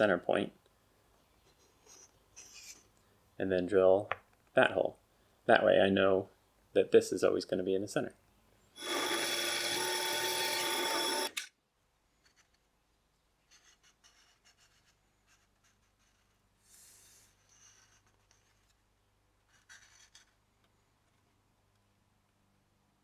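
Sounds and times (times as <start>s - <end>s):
faint scrapes and clicks: 1.4s - 3.1s, 12.2s - 12.7s, 13.4s - 21.9s
drill press drilling wood: 8.8s - 11.4s.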